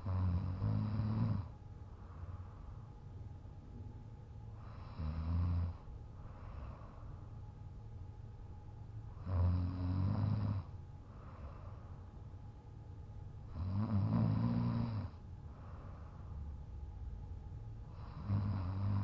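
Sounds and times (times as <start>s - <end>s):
man snoring: 0.0s - 1.5s, 4.6s - 5.8s, 9.2s - 10.7s, 13.5s - 15.2s, 17.9s - 19.0s
soft breathing: 1.4s - 3.3s, 4.5s - 7.8s, 10.6s - 12.6s, 15.0s - 16.8s.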